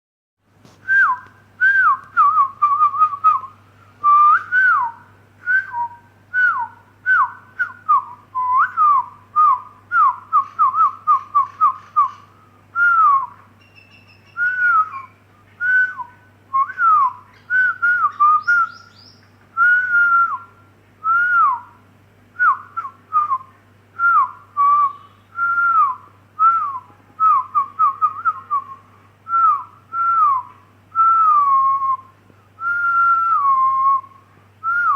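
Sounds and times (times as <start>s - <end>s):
myna bird calling: 10.1s - 19.5s, 24.3s - 25.8s.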